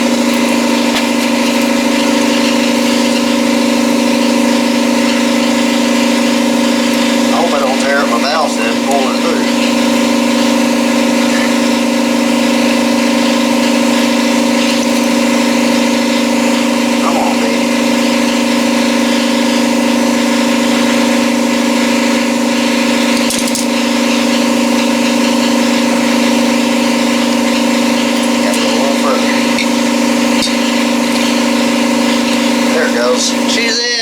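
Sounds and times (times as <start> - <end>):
air compressor humming: 0.0 - 34.0.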